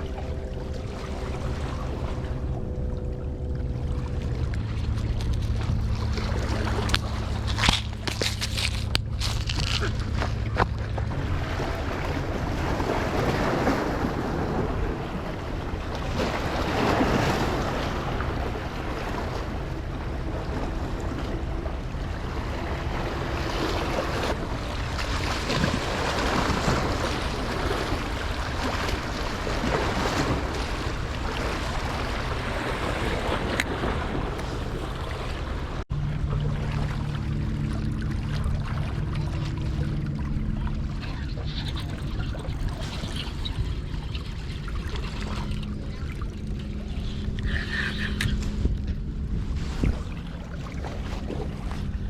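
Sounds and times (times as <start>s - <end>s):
wind buffeting the microphone: 0.0s - 35.8s, 38.2s - 52.0s
ocean surf washing: 0.0s - 38.0s
steady low hum: 0.0s - 52.0s.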